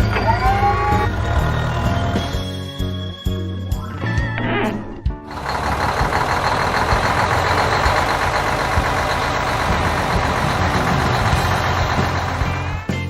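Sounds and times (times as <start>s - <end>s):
construction vehicle engine running: 0.0s - 2.5s, 5.2s - 13.0s.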